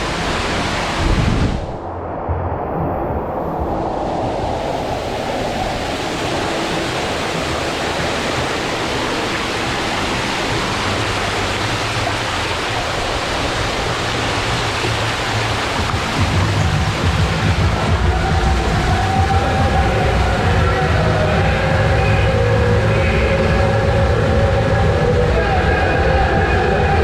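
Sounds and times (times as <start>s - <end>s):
water rushing through slide tube: 0.0s - 27.0s
low rumble: 0.1s - 6.2s.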